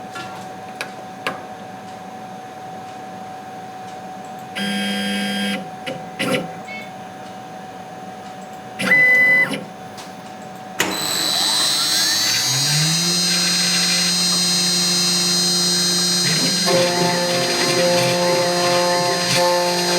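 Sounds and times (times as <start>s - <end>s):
motor whirs: 10.8s - 19.9s
spindle high whine: 10.9s - 19.9s
steady hum: 11.5s - 19.9s.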